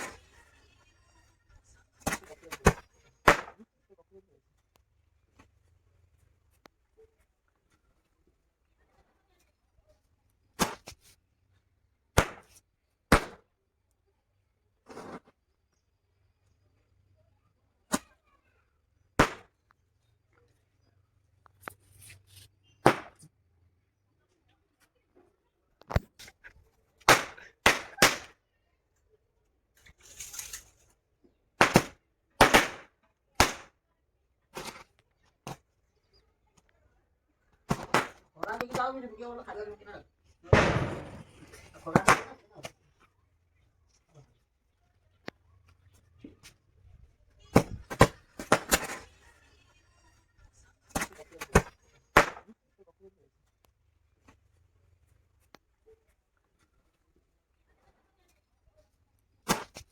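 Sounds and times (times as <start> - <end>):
firework cracks: 2.1 - 3.6, 12.2 - 13.4, 19.2 - 19.6, 22.8 - 23.2, 27.0 - 28.4, 31.6 - 33.7, 40.5 - 42.4, 51.5 - 52.5
rocket firing hiss: 40.5 - 42.2.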